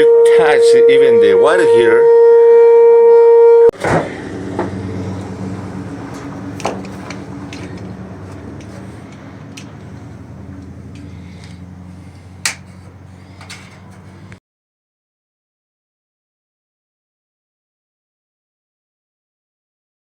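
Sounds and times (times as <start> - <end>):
water heater humming: 0.0 - 14.4.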